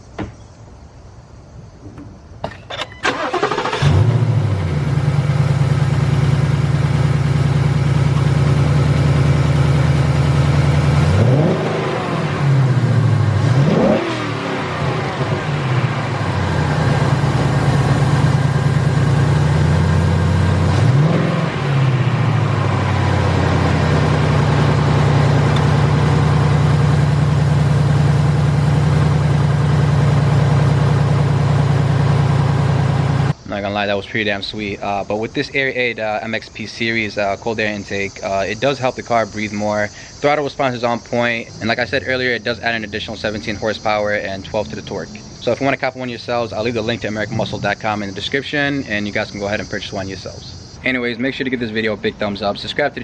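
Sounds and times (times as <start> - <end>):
car engine idling: 1.2 - 33.4, 34.6 - 53.0
car engine starting: 2.4 - 33.4, 34.6 - 53.0
car engine revving: 3.0 - 33.4, 41.0 - 50.8.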